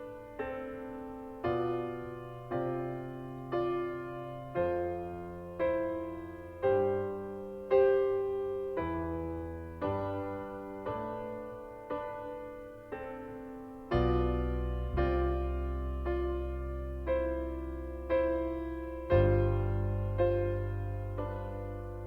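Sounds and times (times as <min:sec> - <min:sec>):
slow piano chords: 0:00.0 - 0:22.0
deep bass note: 0:14.2 - 0:22.0.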